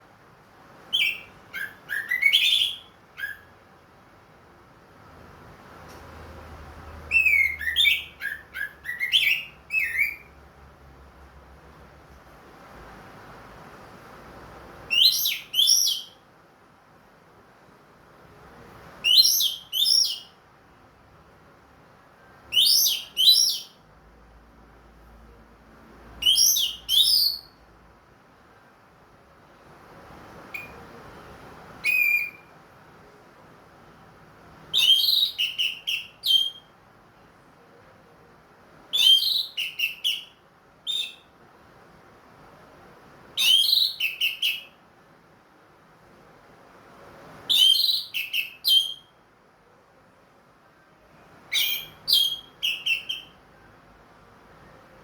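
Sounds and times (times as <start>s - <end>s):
thrush whistling song: 0.9s - 3.6s, 7.1s - 10.4s, 14.9s - 16.2s, 19.0s - 20.4s, 22.5s - 23.8s, 26.2s - 27.6s, 30.5s - 31.0s, 31.8s - 32.6s, 34.7s - 36.8s, 38.9s - 41.4s, 43.4s - 44.8s, 47.5s - 49.2s, 51.5s - 53.4s.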